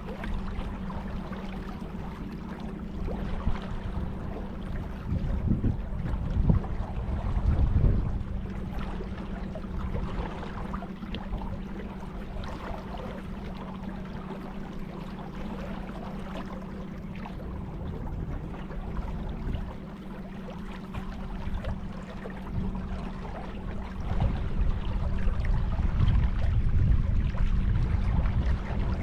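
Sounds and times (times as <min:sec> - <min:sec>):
steady low hum: 0:00.0 - 0:29.0
water splashing around kayak: 0:00.0 - 0:29.0.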